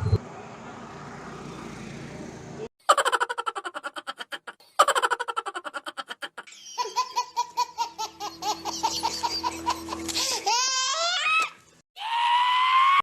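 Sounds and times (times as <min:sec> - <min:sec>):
high-pitched laughter: 0:02.8 - 0:11.4.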